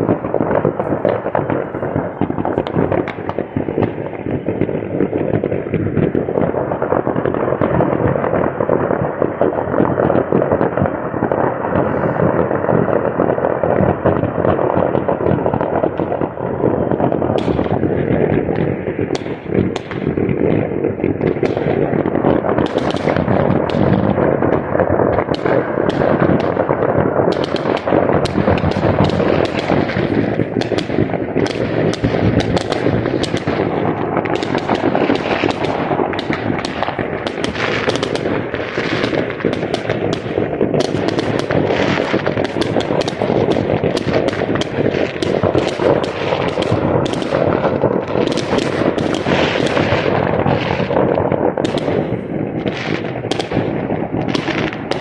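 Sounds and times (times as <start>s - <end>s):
fireworks and firecrackers banging: 0.0s - 55.0s
loud fireworks booms: 0.0s - 55.0s.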